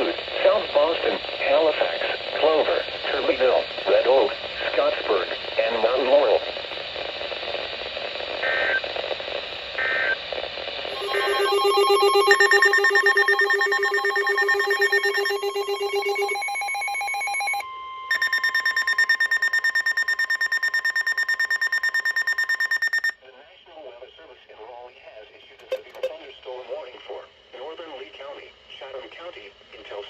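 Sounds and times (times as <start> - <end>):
steady tone: 10.9 - 23.1, 25.6 - 26.2
digital data bursts: 10.9 - 23.2, 25.6 - 26.2
pulsing electronic alarm tone: 10.9 - 23.2, 25.6 - 26.2.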